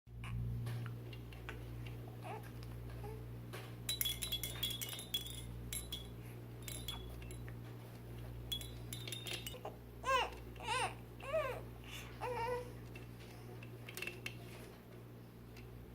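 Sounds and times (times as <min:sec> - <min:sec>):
steady low hum: 0:00.1 - 0:15.9
small hard objects clinking: 0:03.9 - 0:07.5, 0:08.5 - 0:09.6
baby vocalizing: 0:09.6 - 0:12.7.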